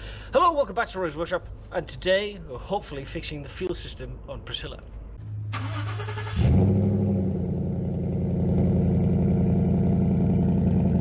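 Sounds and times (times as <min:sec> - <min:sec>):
engine starter whirring: 0:05.2 - 0:07.3
engine idling: 0:05.2 - 0:11.0.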